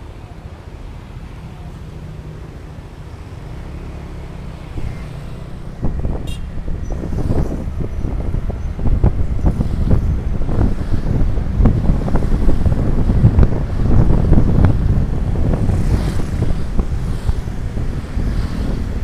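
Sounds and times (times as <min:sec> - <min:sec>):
road and vehicle rumble: 0:00.0 - 0:19.0
wind buffeting microphone: 0:04.2 - 0:19.0.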